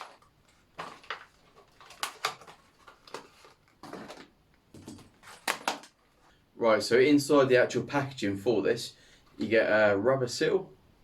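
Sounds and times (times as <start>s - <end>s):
faint packaging rustling: 0.0s - 6.4s.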